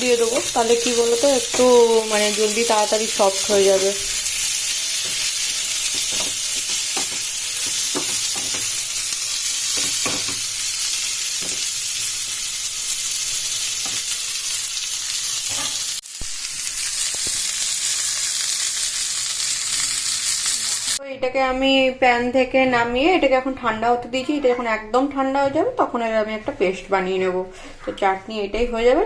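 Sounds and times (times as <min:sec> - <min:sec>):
food sizzling in oil: 0:00.0 - 0:21.0.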